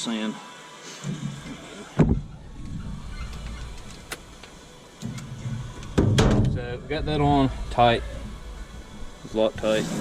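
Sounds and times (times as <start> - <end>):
low uneven rumbling: 2.0 - 10.0
loud knock: 5.9 - 6.6.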